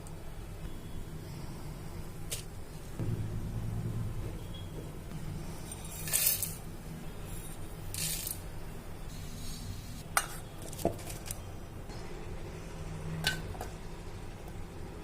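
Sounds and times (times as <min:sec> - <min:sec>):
faint steady hum: 0:00.0 - 0:15.0
utensils scraping: 0:05.6 - 0:06.6, 0:07.2 - 0:08.5.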